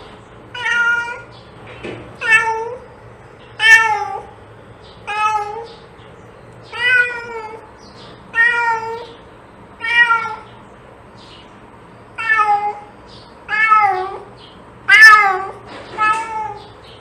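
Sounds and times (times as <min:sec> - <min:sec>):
cat meowing: 0:00.5 - 0:01.3, 0:02.2 - 0:02.8, 0:03.6 - 0:04.3, 0:05.0 - 0:05.8, 0:06.7 - 0:07.7, 0:08.3 - 0:09.2, 0:09.8 - 0:10.5, 0:12.2 - 0:12.9, 0:13.5 - 0:14.3, 0:14.9 - 0:16.7.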